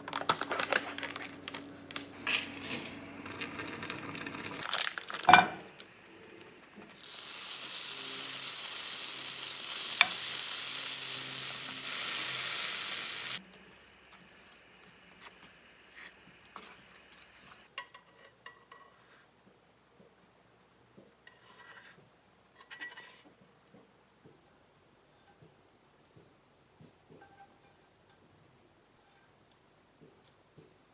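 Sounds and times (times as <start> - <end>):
food sizzling in a hot pan: 2.2 - 17.7.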